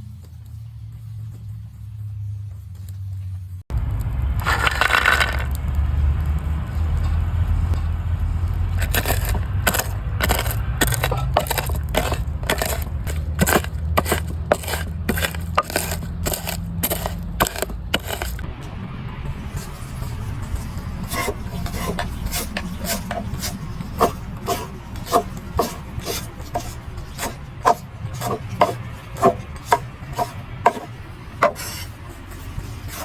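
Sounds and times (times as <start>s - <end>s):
knife chopping on board: 8.8s - 18.4s, 21.1s - 31.8s.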